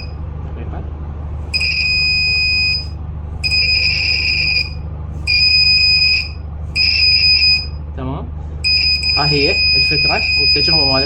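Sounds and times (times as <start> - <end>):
alarm buzzer: 1.6 - 7.8, 8.6 - 11.0.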